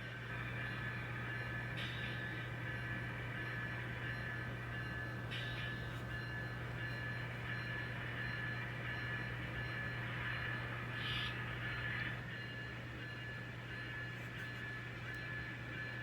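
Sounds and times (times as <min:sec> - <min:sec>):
model train motor whine: 0:00.0 - 0:12.6.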